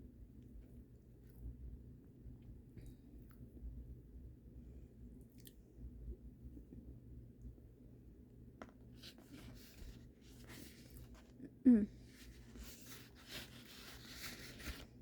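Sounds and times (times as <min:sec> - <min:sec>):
chewing soft cake: 0:00.0 - 0:08.1.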